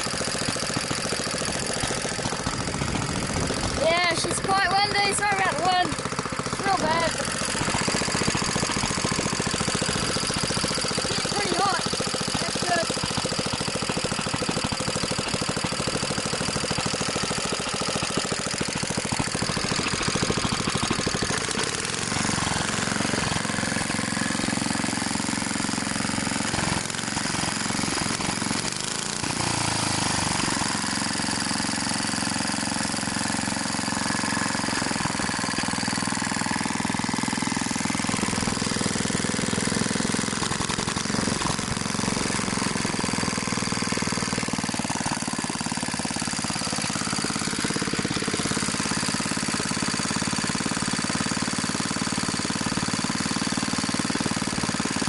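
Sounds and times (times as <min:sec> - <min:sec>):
single-cylinder engine running: 0:00.0 - 0:55.0.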